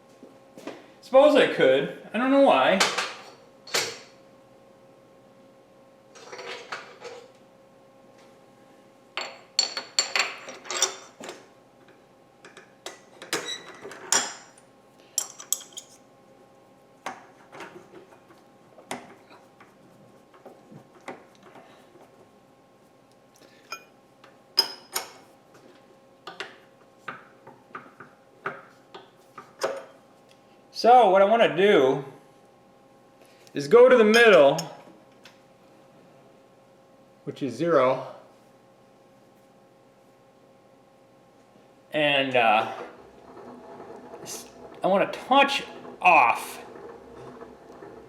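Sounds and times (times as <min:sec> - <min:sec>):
faint steady hum: 0:00.0 - 0:48.0
metal tools clinking: 0:09.2 - 0:11.2.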